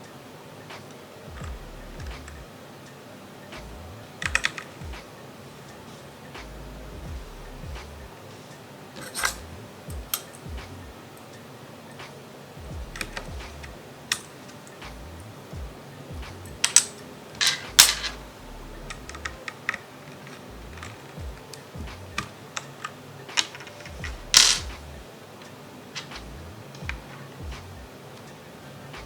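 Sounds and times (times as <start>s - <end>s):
plastic keyboard parts clicking: 4.1s - 5.0s, 9.0s - 9.5s, 12.9s - 14.8s, 16.4s - 18.3s, 18.9s - 24.9s, 26.0s - 27.4s.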